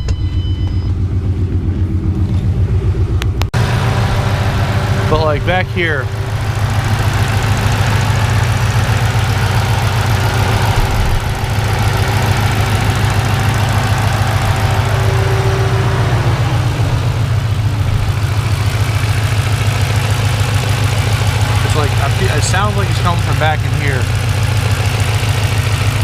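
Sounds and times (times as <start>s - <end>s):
car engine idling: 0.1s - 26.0s
deep thump from engine: 10.3s - 13.4s.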